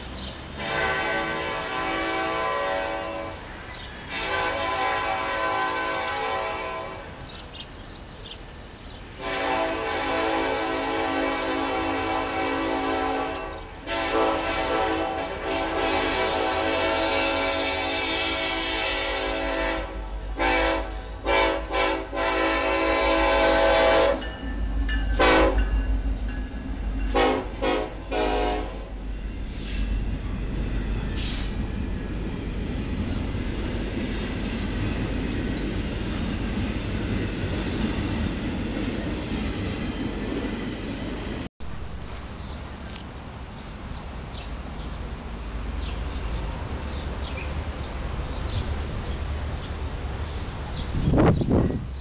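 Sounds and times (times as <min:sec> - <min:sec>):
train rumbling past: 0:00.0 - 0:52.0
locomotive air horn blasts: 0:00.6 - 0:03.4, 0:04.1 - 0:07.1, 0:09.2 - 0:24.4, 0:25.2 - 0:25.8, 0:27.1 - 0:29.0
wheel squeal: 0:29.5 - 0:30.2, 0:31.1 - 0:31.9.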